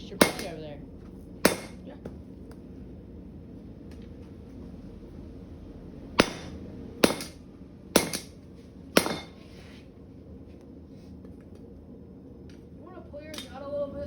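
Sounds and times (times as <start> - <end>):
hammer striking metal: 0.2 - 0.6, 1.4 - 1.8, 6.2 - 8.3, 9.0 - 9.4.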